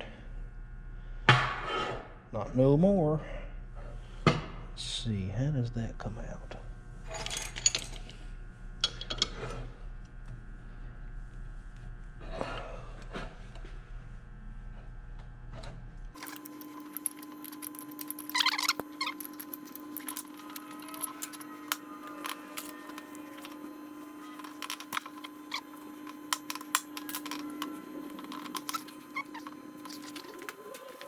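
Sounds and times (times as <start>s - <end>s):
steady hum: 2.2s - 31.0s
metal parts clicking and clinking: 7.1s - 8.1s, 16.2s - 31.0s.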